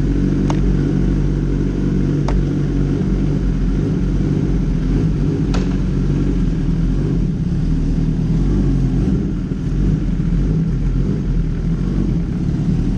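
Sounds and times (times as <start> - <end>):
motorcycle engine running: 0.0 - 12.9.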